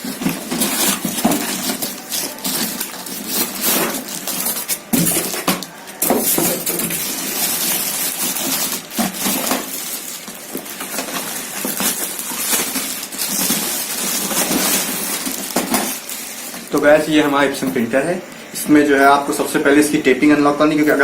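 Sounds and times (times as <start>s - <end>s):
packaging rustling and scraping: 0.0s - 21.0s.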